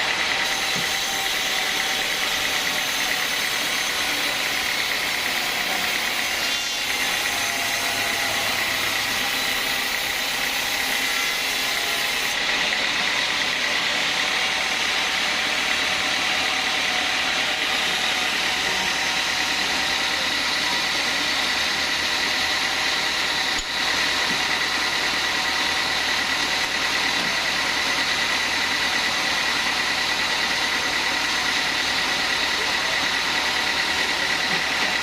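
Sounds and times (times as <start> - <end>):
band sawmill whine: 0.0 - 35.0.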